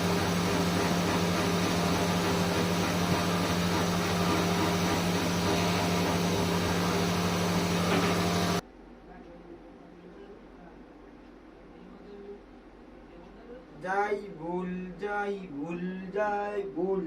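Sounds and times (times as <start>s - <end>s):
cutting machine motor whirring: 0.0s - 8.6s.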